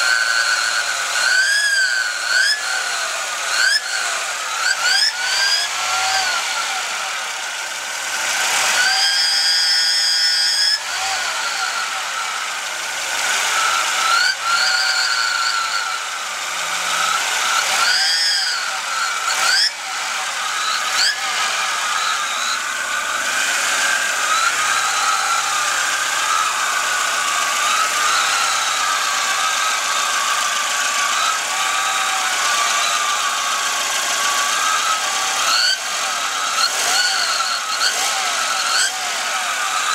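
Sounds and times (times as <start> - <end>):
car engine revving: 0.0 - 39.9
high-pitched turbo whine: 0.0 - 39.9.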